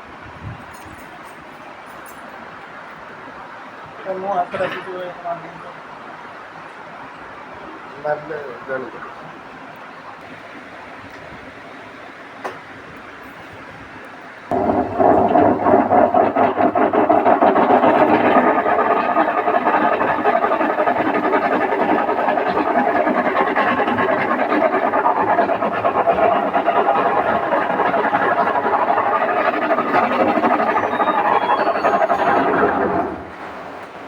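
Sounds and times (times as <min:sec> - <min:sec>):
washing machine running: 0:14.5 - 0:34.0.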